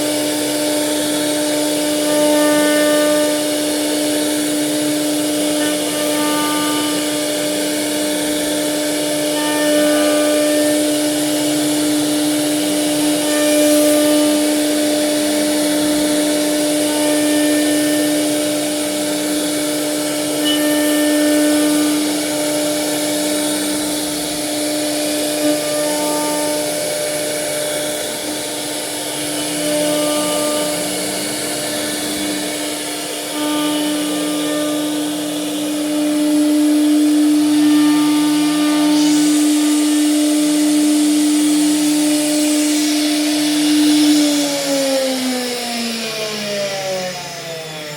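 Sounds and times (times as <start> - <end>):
hiss of wood cutting: 0.0 - 47.9
router spindle whine: 0.0 - 47.9
motor tones rising and falling: 15.5 - 47.9.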